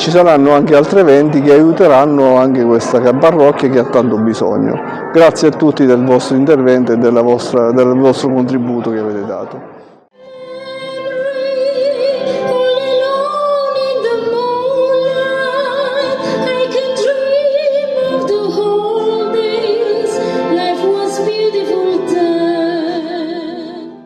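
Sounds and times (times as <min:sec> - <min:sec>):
soprano singing operatically: 0:10.2 - 0:23.9.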